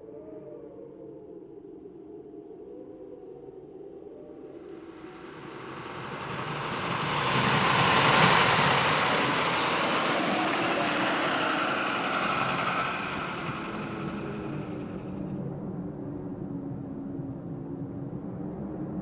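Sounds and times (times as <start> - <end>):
vehicle passing by: 4.8 - 15.2.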